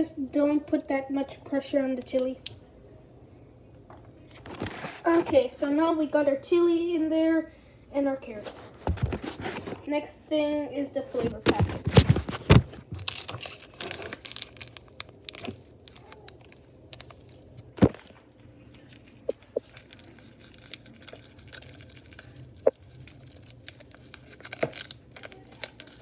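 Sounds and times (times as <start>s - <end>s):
packet tearing and crinkling: 11.8s - 26.0s.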